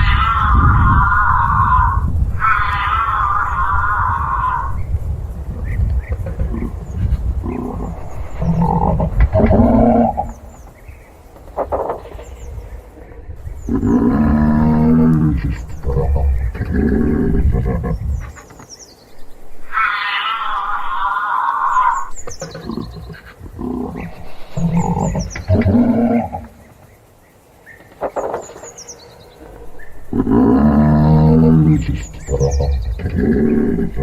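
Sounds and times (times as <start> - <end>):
giraffe humming and snoring: 5.9 - 10.7, 13.6 - 18.4, 21.8 - 26.6, 29.4 - 34.0.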